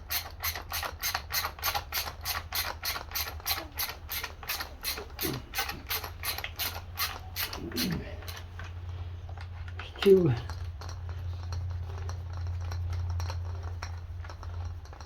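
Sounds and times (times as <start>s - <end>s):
ratchet clicking: 0.1s - 8.4s.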